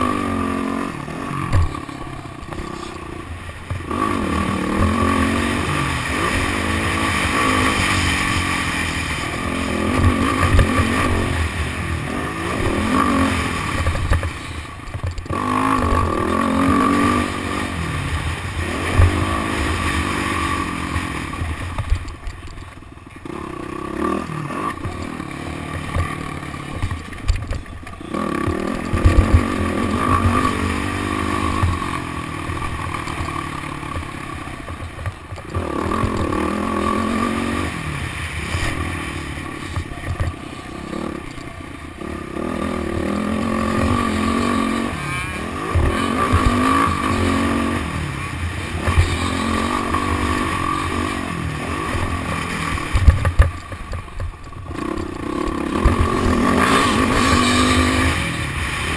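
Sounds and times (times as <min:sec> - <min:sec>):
dirt bike engine revving: 0:00.0 - 0:58.9
clattering from the bike: 0:24.7 - 0:29.5, 0:51.8 - 0:58.2.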